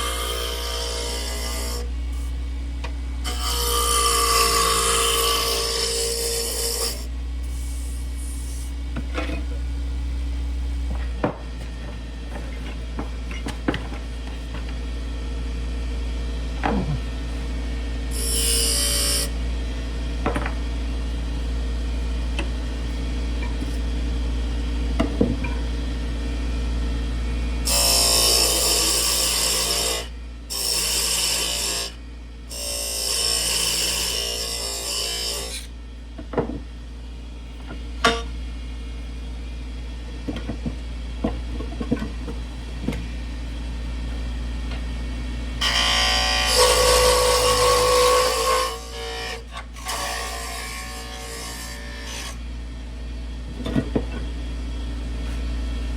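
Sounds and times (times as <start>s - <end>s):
wood lathe humming: 0.0s - 2.1s, 2.8s - 7.1s, 27.6s - 35.8s, 45.6s - 52.4s.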